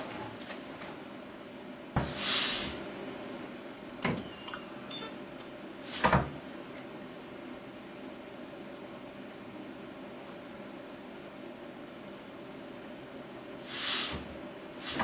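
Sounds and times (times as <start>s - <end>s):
air hissing: 2.0s - 2.8s, 13.6s - 14.2s.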